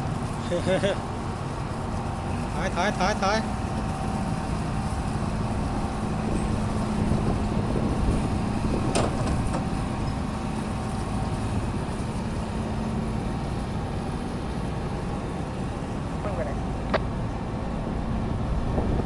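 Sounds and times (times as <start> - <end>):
engine droning: 0.0 - 19.0.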